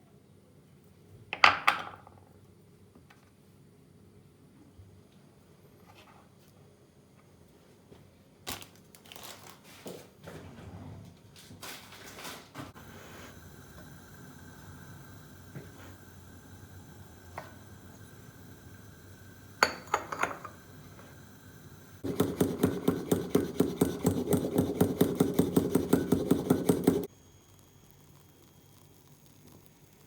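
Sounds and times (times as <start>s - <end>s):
utensil stirring in a container: 22.0s - 27.1s.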